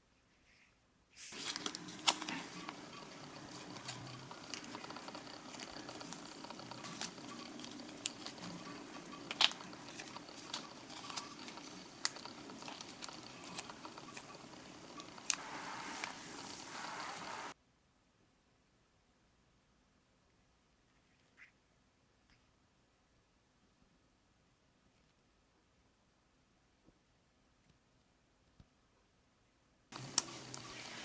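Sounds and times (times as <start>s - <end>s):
plastic toy rustling and clicking: 1.3s - 17.6s, 29.9s - 31.0s.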